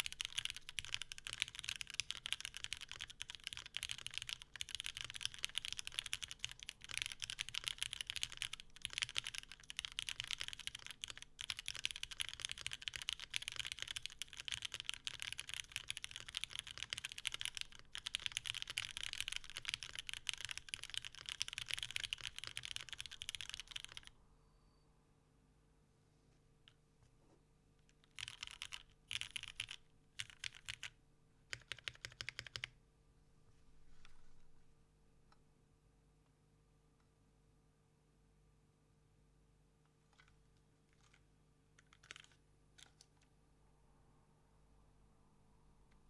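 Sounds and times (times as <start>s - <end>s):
mechanical keyboard typing: 0.0s - 24.1s, 28.0s - 32.8s, 41.0s - 43.2s.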